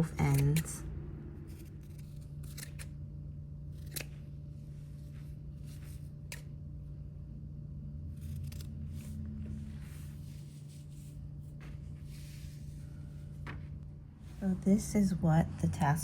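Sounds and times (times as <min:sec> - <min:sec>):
scissors snipping yarn: 0:00.0 - 0:00.8.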